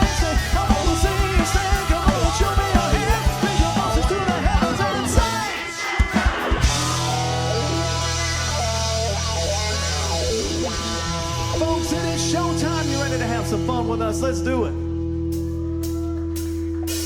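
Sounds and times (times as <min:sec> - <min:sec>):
person singing: 0:00.0 - 0:08.2
fast driving drum beat: 0:00.0 - 0:08.3
country-rock band playing: 0:00.0 - 0:17.0.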